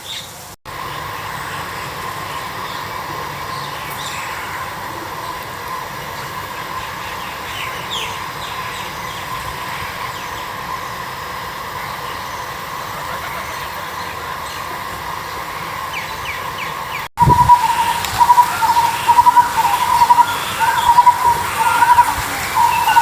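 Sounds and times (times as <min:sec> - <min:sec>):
constant hum-like tone: 0:00.4 - 0:23.0
small birds chirping: 0:11.8 - 0:23.0.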